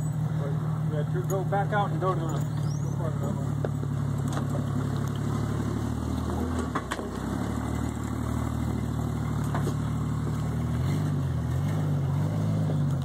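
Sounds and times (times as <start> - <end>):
engine running at low revs: 0.0 - 13.0.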